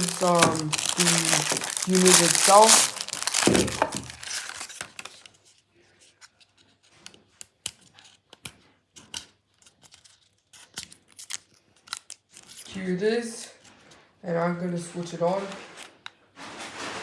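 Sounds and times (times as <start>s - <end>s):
plastic packaging rustling: 0.0s - 5.3s.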